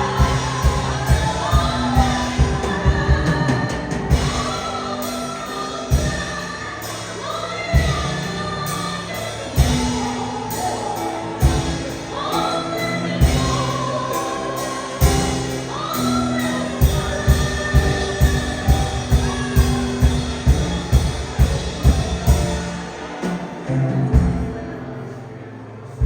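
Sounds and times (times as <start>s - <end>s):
drum hits: 0.0s - 4.7s
sustained bass notes: 0.0s - 12.0s
person singing: 0.0s - 25.2s.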